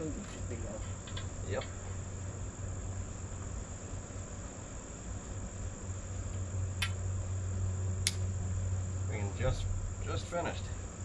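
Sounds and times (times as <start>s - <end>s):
low steady hum: 0.0s - 11.0s
sharp click: 6.8s - 7.0s, 8.0s - 8.2s.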